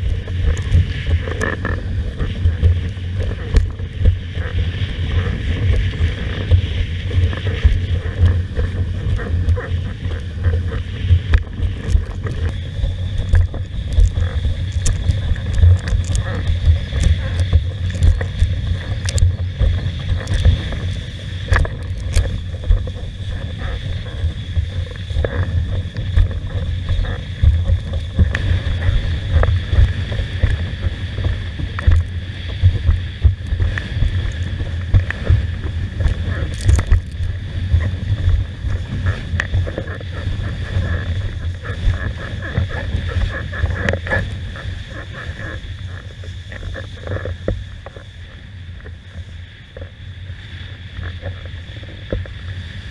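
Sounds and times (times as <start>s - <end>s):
steady high whine: 0.0s - 52.9s
wind buffeting microphone: 0.0s - 52.9s
water slapping against board: 5.6s - 46.0s.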